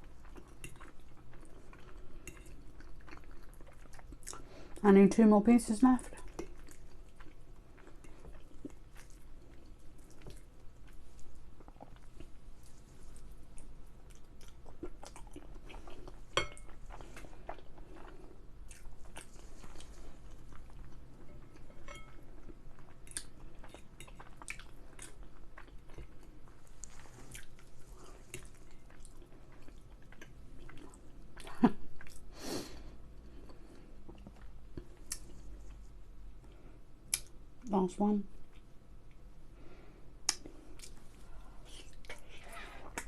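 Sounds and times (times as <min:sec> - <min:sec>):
chewing and biting food: 0:06.1 - 0:32.3.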